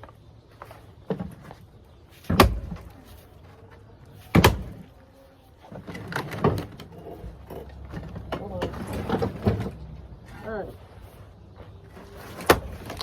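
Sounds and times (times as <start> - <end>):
small knocks and rattles: 5.6 - 10.0.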